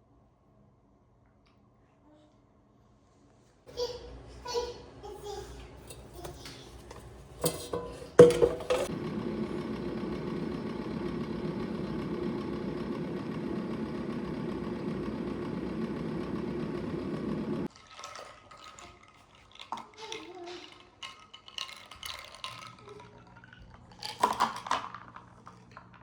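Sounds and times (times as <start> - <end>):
small motor humming: 5.2 - 17.7.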